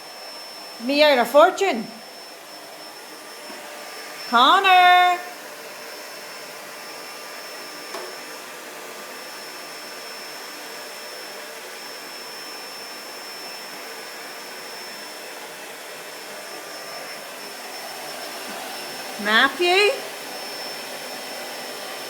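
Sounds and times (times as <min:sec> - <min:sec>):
vacuum cleaner running: 0:00.0 - 0:22.0.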